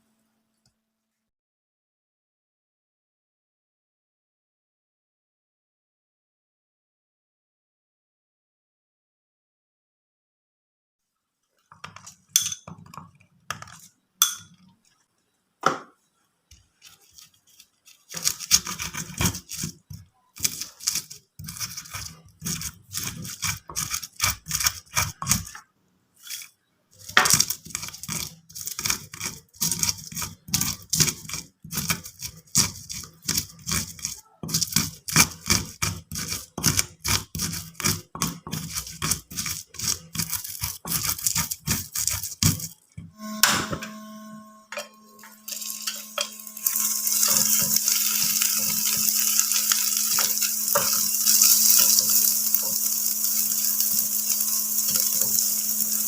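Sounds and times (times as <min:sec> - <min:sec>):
kitchen scrapes taps and clinks: 0:11.7 - 0:14.7, 0:44.7 - 0:54.1, 0:54.8 - 0:55.5.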